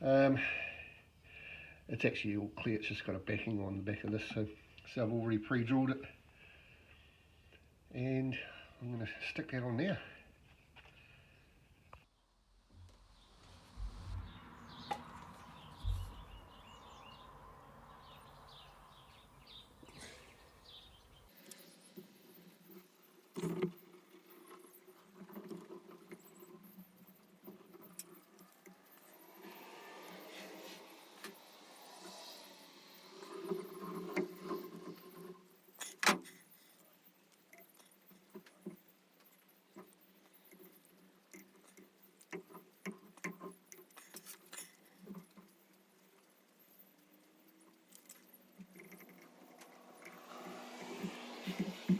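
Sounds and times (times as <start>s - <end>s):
rustling and scraping: 11.7s - 16.8s
low thumps: 12.5s - 16.8s
birds chirping: 13.0s - 22.9s.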